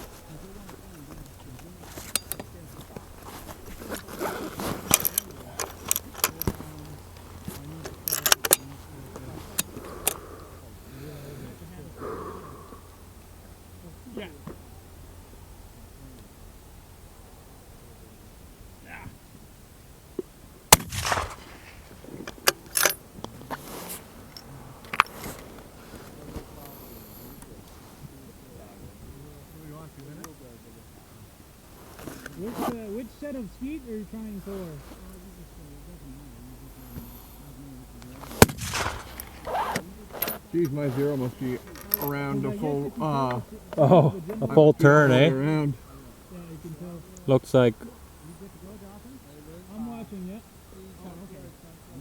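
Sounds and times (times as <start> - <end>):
equipment clicking and rattling: 0.0 - 10.2, 20.8 - 26.7, 38.2 - 42.2
rifle shot: 20.7 - 23.0, 38.4 - 39.6.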